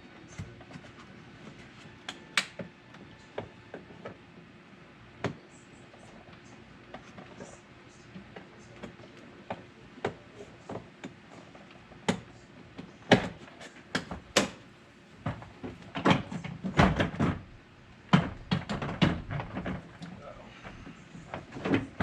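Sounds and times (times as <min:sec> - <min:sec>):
plastic parts knocking: 0:18.1 - 0:22.0.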